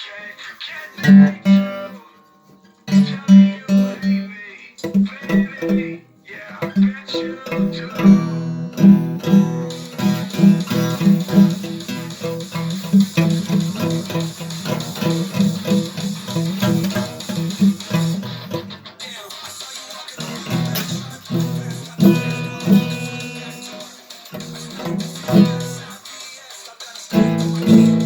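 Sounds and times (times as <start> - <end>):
guitar plucked and strummed: 1.0 - 26.2, 27.1 - 28.0.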